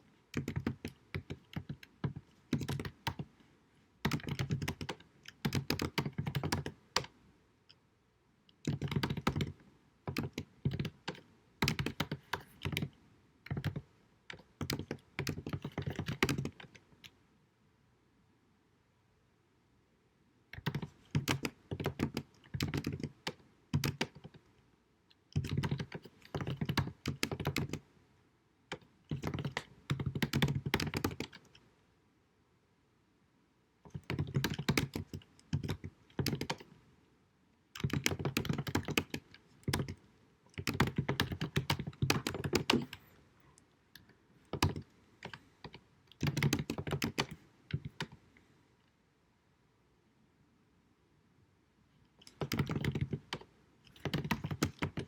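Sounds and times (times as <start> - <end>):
typing on computer keyboard: 0.3 - 3.3, 4.0 - 7.2, 8.6 - 16.9, 20.5 - 24.4, 25.3 - 27.8, 28.7 - 31.6, 33.8 - 36.7, 37.8 - 43.1, 44.5 - 48.2, 52.2 - 55.0.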